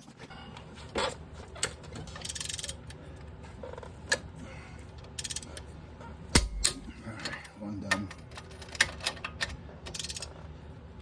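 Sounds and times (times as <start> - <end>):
torque wrench ratchet clicking: 5.2 - 5.5, 9.9 - 10.3.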